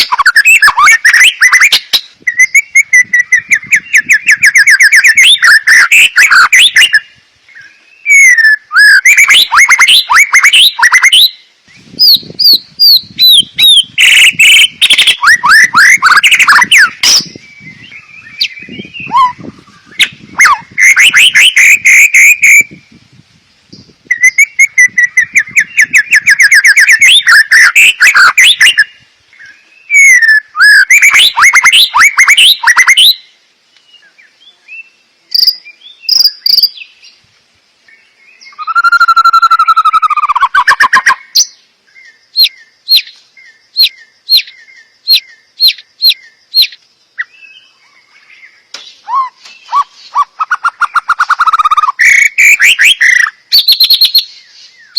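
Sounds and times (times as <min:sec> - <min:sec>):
sharp bird calls: 0:00.0 - 0:23.1, 0:23.7 - 0:37.2, 0:37.9 - 0:54.9
bird song with whistles and trills: 0:00.0 - 0:54.9.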